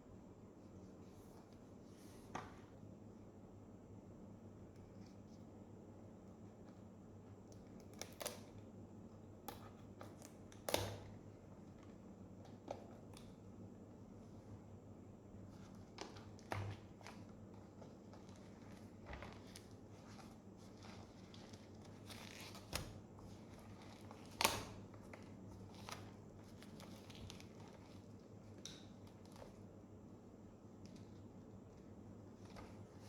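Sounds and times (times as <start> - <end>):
packaging rustling and crinkling: 15.6 - 29.6.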